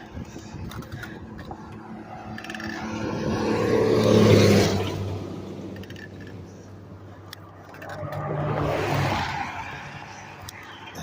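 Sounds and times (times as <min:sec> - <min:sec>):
car passing by: 0:01.8 - 0:05.8, 0:07.8 - 0:10.4.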